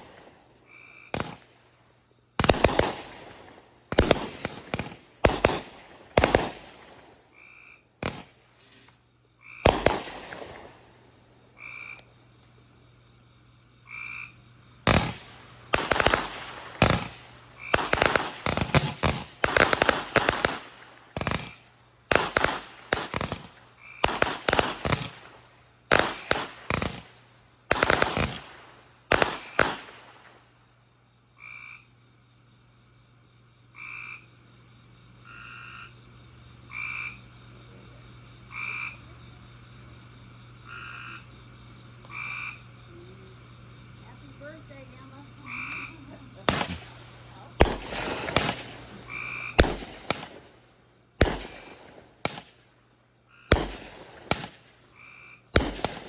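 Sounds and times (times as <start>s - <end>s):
fireworks bangs: 0.0s - 0.5s, 1.1s - 1.6s, 2.4s - 7.2s, 8.0s - 9.0s, 9.6s - 11.1s, 14.8s - 30.4s, 44.2s - 52.7s, 53.5s - 54.8s, 55.5s - 56.0s
frog croaking: 0.7s - 1.2s, 7.3s - 8.0s, 9.4s - 9.7s, 11.6s - 12.1s, 13.8s - 14.4s, 23.8s - 24.1s, 31.4s - 31.9s, 33.7s - 34.4s, 35.2s - 36.0s, 36.7s - 37.3s, 38.4s - 39.2s, 40.6s - 41.3s, 42.0s - 43.0s, 45.4s - 46.7s, 49.0s - 49.6s, 53.3s - 53.5s, 55.0s - 55.5s.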